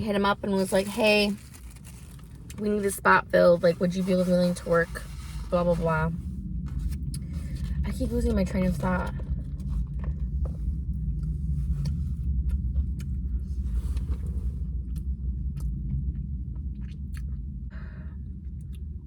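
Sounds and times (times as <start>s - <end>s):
low hum: 0.0s - 19.0s
rustling: 0.5s - 12.2s
wet mouth chewing: 11.2s - 17.5s.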